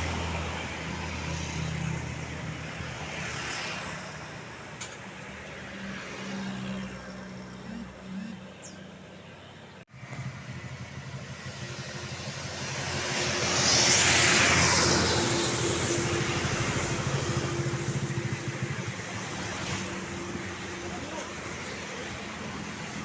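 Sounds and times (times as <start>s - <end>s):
motor vehicle passing: 5.6s - 21.2s.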